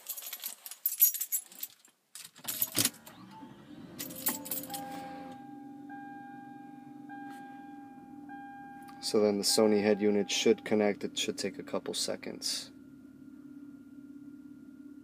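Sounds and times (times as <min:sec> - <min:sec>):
keys jangling: 0:00.0 - 0:02.9, 0:04.0 - 0:05.0
car engine starting and idling: 0:02.5 - 0:15.0
steady high tone: 0:03.1 - 0:15.0.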